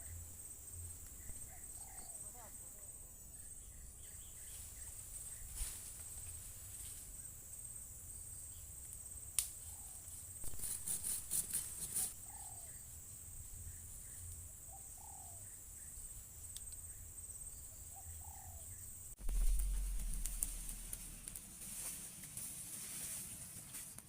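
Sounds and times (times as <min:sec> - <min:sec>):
crickets chirring: 0:00.0 - 0:22.6
crackling rustle: 0:04.4 - 0:07.3, 0:19.2 - 0:24.0.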